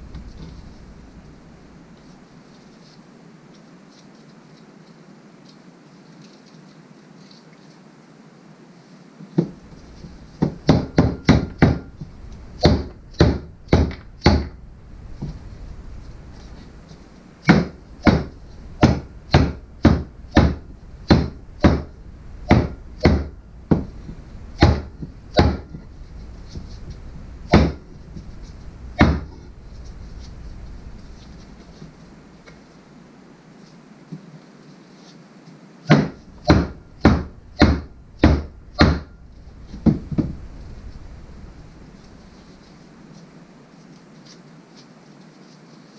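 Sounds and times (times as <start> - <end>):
rubber mallet knocking on metal: 10.4 - 14.6, 17.5 - 21.9, 22.5 - 24.0, 35.9 - 39.1.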